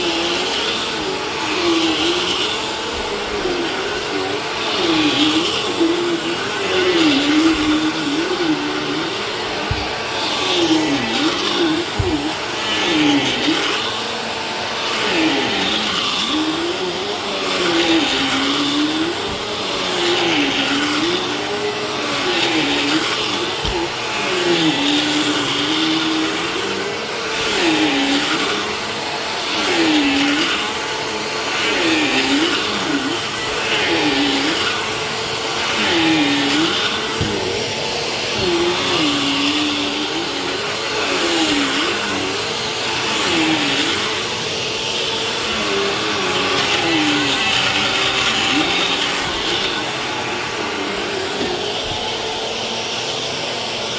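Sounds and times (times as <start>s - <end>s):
vacuum cleaner running: 0.0s - 53.9s.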